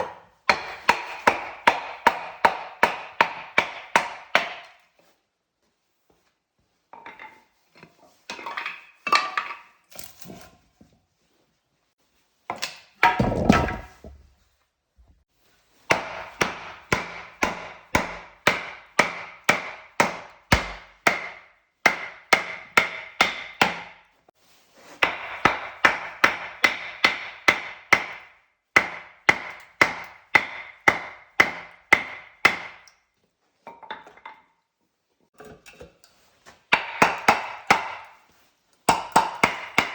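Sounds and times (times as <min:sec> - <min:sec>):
striking blows on wood: 0:13.0 - 0:14.3
heavy thud: 0:13.1 - 0:14.3.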